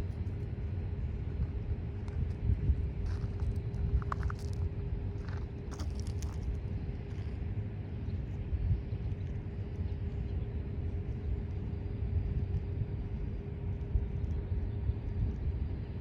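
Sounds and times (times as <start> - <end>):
faint steady hum: 0.0 - 16.0
freight train rumbling: 0.0 - 16.0.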